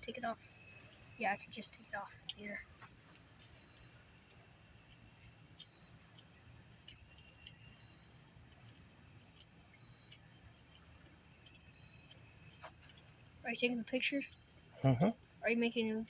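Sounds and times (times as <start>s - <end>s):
insects chirping: 0.0s - 16.0s
faint clicks: 5.5s - 14.9s.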